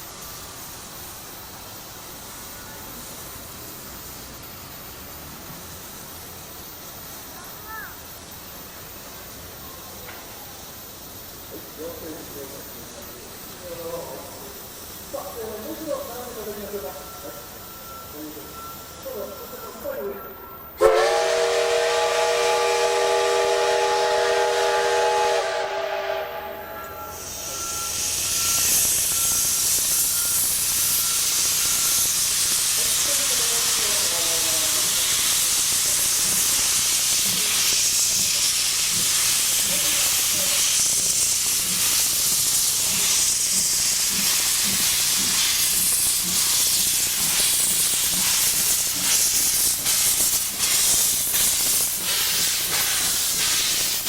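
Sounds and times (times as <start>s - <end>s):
hiss of venting steam: 0.0s - 19.8s, 20.8s - 54.0s
steam locomotive whistle: 20.8s - 41.6s.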